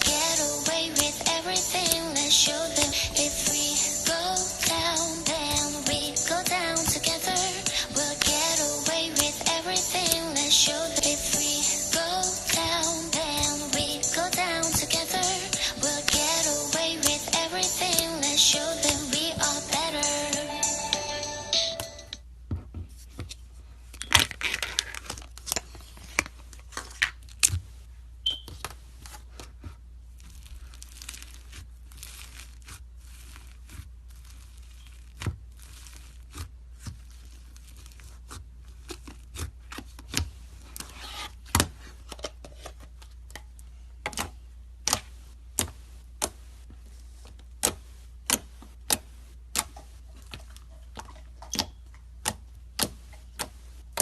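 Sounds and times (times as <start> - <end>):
slime crackling: 0.0 - 20.4, 30.0 - 42.0.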